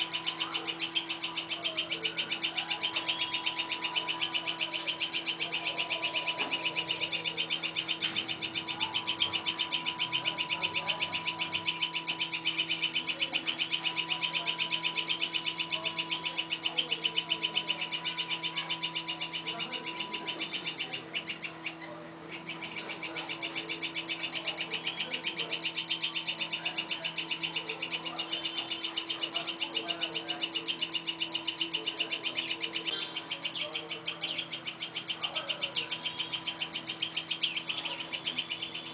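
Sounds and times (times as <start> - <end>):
bird chirping: 0.0 - 38.9
steady low hum: 0.0 - 38.9.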